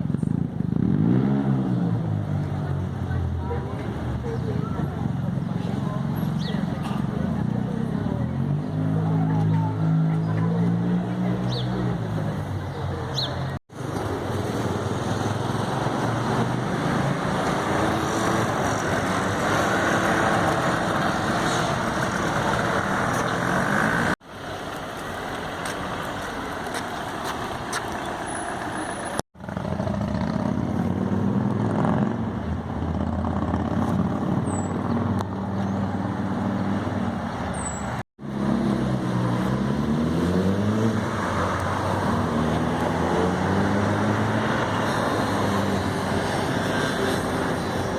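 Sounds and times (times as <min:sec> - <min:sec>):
motorcycles revving past: 0:00.0 - 0:02.6, 0:14.6 - 0:24.2, 0:29.4 - 0:35.2, 0:38.3 - 0:47.9.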